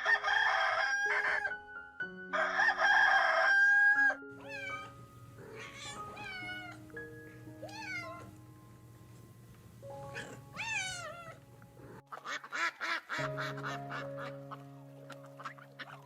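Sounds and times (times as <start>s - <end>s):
background music with held notes: 0.0s - 16.0s
cat meowing: 4.4s - 6.9s, 7.6s - 8.4s, 10.1s - 11.4s
duck quacking: 12.1s - 16.0s.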